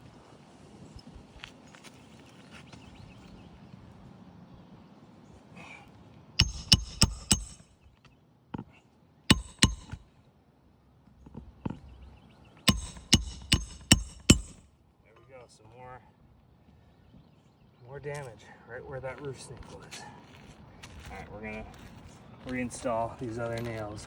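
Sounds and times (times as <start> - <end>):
hammer striking roofing nails: 6.4 - 7.7, 9.3 - 10.0, 12.7 - 14.6.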